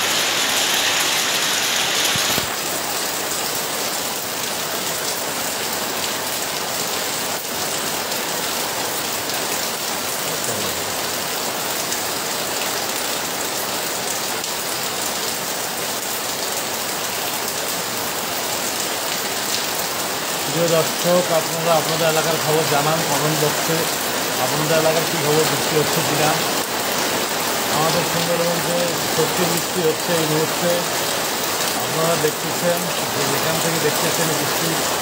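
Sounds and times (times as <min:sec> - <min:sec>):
heavy rain falling: 0:00.0 - 0:35.0.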